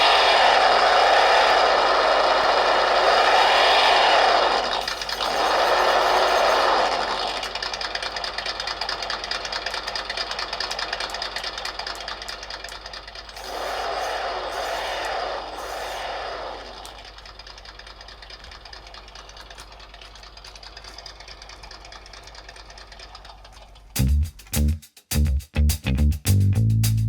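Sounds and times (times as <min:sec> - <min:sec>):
simulated engine revving: 0:00.0 - 0:07.8, 0:13.4 - 0:17.6.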